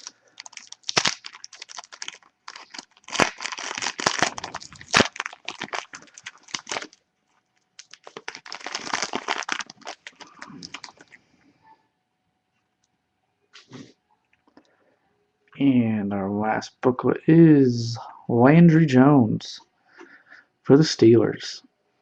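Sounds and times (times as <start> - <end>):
wrapper tearing and crinkling: 0.0 - 11.2.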